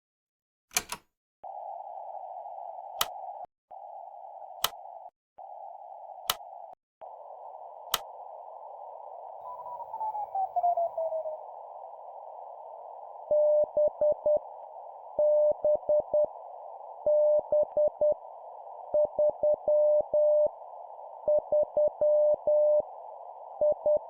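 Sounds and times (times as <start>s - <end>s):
sharp clicks: 0.7s - 1.1s, 4.6s - 4.8s, 6.2s - 6.5s, 7.9s - 8.1s
narrow band radio hiss: 1.4s - 24.0s
pulsing morse beep: 15.2s - 16.3s, 17.0s - 18.2s, 18.9s - 20.5s, 21.2s - 22.8s.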